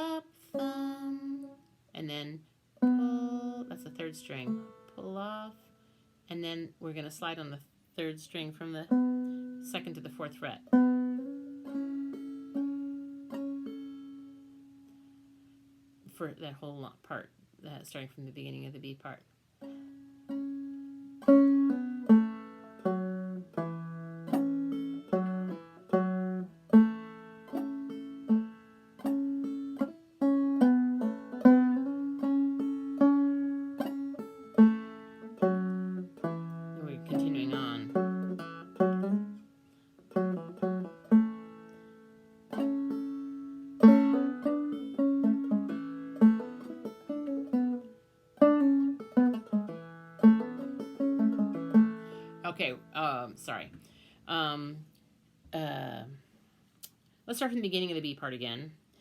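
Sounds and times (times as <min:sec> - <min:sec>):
clawhammer banjo playing: 0:00.0 - 0:02.2, 0:02.8 - 0:05.4, 0:08.1 - 0:14.9, 0:19.6 - 0:53.6.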